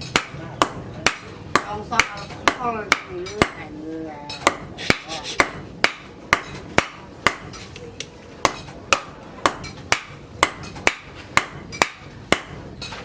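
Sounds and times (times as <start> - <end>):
hammer striking steel on anvil: 0.0 - 7.7, 8.4 - 13.0.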